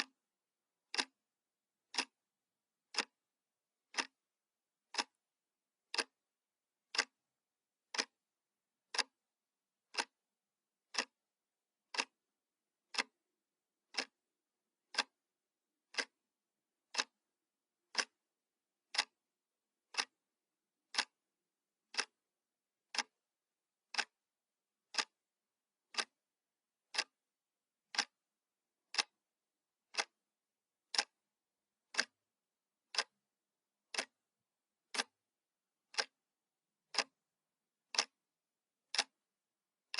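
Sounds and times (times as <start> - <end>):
clock ticking: 0.0 - 0.2, 0.9 - 1.2, 1.8 - 2.2, 2.9 - 3.2, 3.9 - 4.2, 4.9 - 5.2, 5.8 - 6.2, 6.9 - 7.2, 7.9 - 8.2, 8.9 - 9.2, 9.9 - 10.2, 10.9 - 11.2, 11.9 - 12.2, 12.9 - 13.2, 13.9 - 14.2, 14.9 - 15.2, 15.9 - 16.2, 16.9 - 17.2, 17.9 - 18.2, 18.9 - 19.2, 19.9 - 20.2, 20.9 - 21.2, 21.9 - 22.2, 22.9 - 23.2, 23.9 - 24.2, 24.9 - 25.2, 25.9 - 26.2, 26.9 - 27.2, 27.9 - 28.2, 28.9 - 29.2, 29.9 - 30.2, 30.8 - 31.2, 31.9 - 32.2, 32.9 - 33.2, 33.8 - 34.3, 34.9 - 35.2, 35.9 - 36.2, 36.9 - 37.2, 37.9 - 38.2, 38.9 - 39.2.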